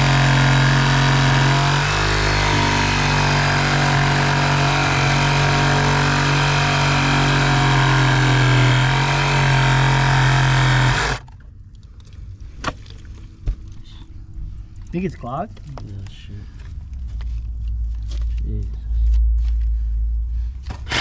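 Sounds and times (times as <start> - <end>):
diesel engine running: 0.0 - 11.2.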